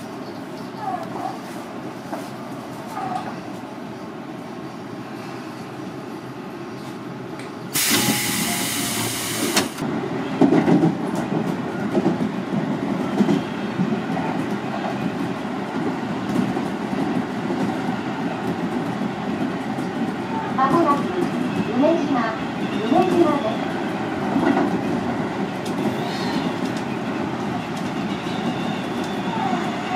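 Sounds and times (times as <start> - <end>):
train running rumble: 0.0 - 29.9
air hiss burst: 7.8 - 9.8.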